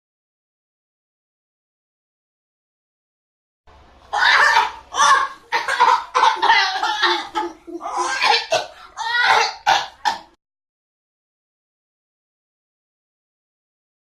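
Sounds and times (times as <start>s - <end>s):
person coughing: 5.5s - 10.4s.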